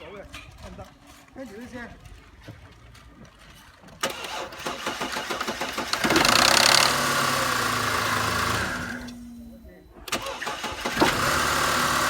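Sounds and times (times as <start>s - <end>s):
car engine starting and idling: 4.0s - 12.0s
starter cranking: 4.0s - 12.0s.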